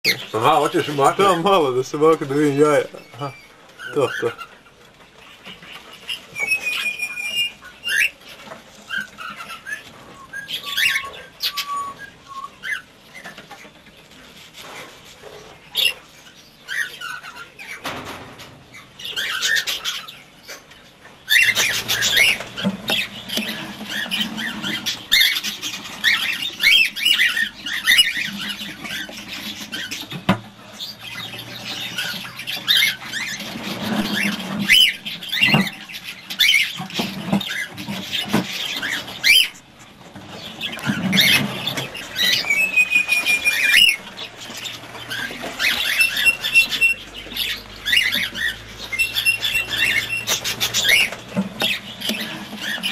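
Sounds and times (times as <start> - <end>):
cockatiels chirping and squeaking: 0.0 - 52.9
whistled bird notes: 6.3 - 8.2, 8.9 - 12.9, 41.2 - 44.1.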